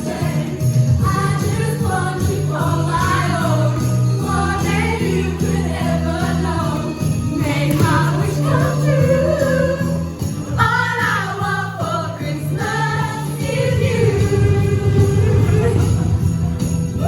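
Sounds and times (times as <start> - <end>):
sleigh bells ringing: 0.0 - 17.0
steady bass notes: 12.0 - 17.0.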